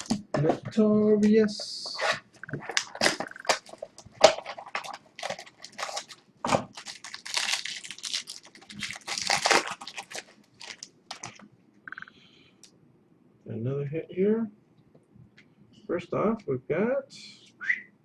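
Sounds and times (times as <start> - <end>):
trading card packaging crinkling: 2.4 - 11.5.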